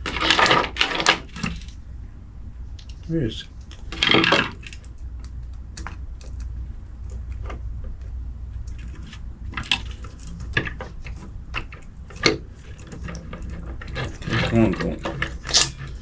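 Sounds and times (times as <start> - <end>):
low steady hum: 0.0 - 16.0
plastic toy parts clicking: 8.7 - 16.0.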